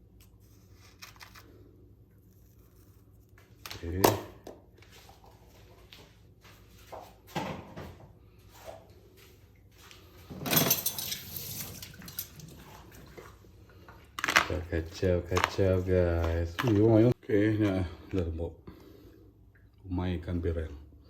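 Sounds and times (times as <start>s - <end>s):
dishes and utensils clattering: 10.3s - 13.3s.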